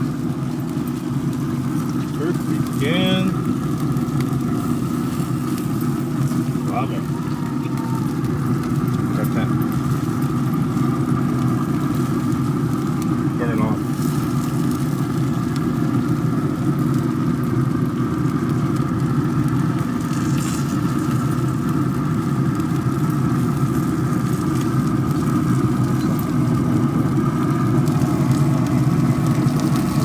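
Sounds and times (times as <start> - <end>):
steady motor hum: 0.0 - 30.0.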